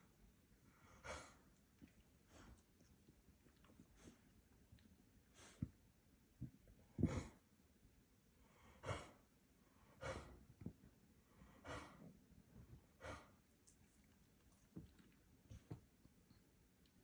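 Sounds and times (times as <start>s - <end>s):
dog making raspy huffs: 8.8s - 9.2s, 9.9s - 10.4s, 11.6s - 12.1s, 13.0s - 13.4s.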